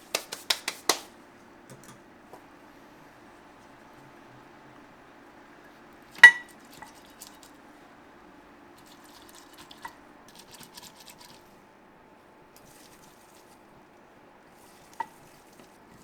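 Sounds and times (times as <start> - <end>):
low steady hum: 1.1 - 16.0
metal kitchenware clinking: 6.2 - 7.4.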